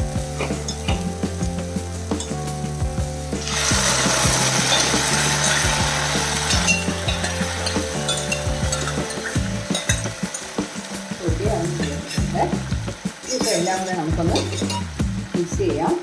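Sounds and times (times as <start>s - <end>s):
loud sizzle in hot pan: 0.0s - 16.0s
spoon clinking on pan: 0.4s - 1.2s, 2.1s - 2.4s, 4.0s - 12.4s, 13.2s - 14.9s.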